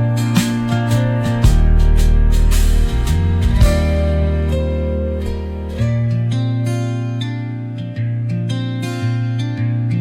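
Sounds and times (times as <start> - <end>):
steady beat: 0.0 - 5.3
deep bass note: 0.0 - 5.7
plucked guitar: 0.0 - 10.0.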